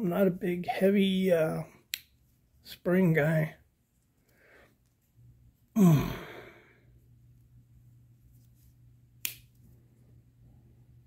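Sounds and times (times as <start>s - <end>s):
man sighing: 5.8s - 6.8s.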